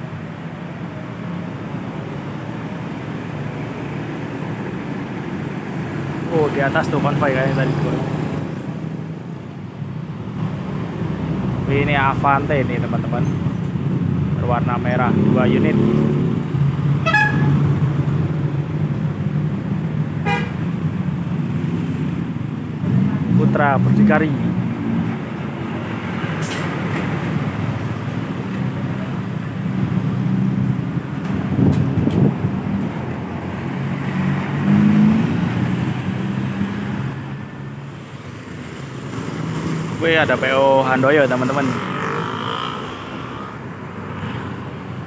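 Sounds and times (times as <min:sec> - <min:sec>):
bus passing: 0:00.0 - 0:45.0
road traffic: 0:00.0 - 0:45.0
short horn toot: 0:17.0 - 0:17.6.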